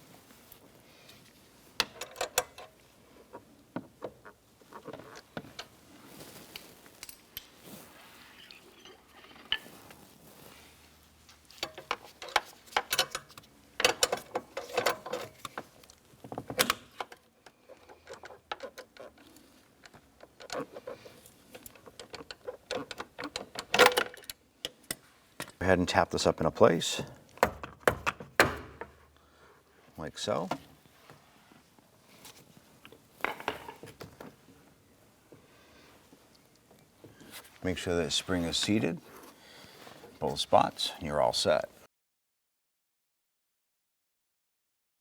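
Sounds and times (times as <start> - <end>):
hand tools clicking and clanking: 1.8 - 2.8, 11.6 - 15.8, 16.4 - 25.6.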